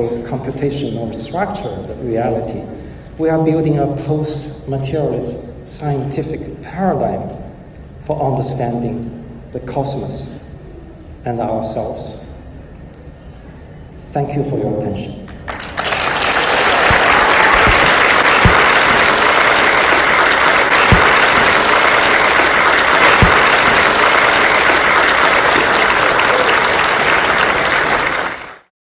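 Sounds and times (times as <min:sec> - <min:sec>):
audience applauding: 0:15.3 - 0:28.7.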